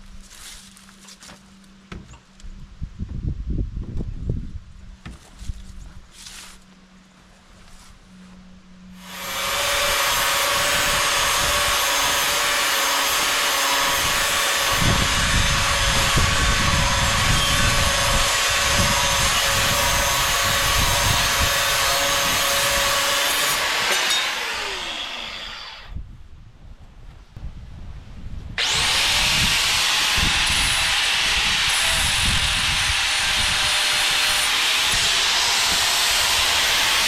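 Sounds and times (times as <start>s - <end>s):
angle grinder whining: 9.0s - 26.0s, 28.6s - 37.0s
grinder cutting steel: 9.0s - 26.0s, 28.6s - 37.0s.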